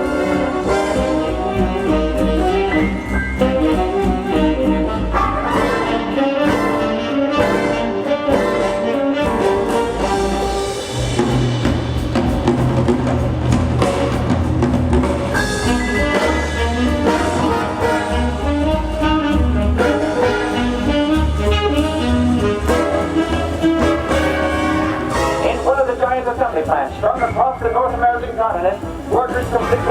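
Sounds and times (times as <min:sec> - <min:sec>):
brass-led orchestral music: 0:00.0 - 0:29.9.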